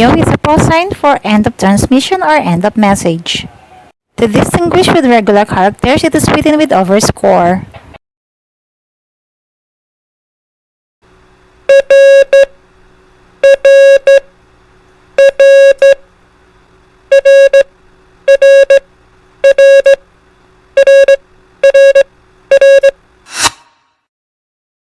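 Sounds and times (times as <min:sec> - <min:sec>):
morse code beeps: 0:11.7 - 0:12.6, 0:13.4 - 0:14.3, 0:15.2 - 0:16.0, 0:17.1 - 0:17.7, 0:18.3 - 0:20.0, 0:20.8 - 0:23.0.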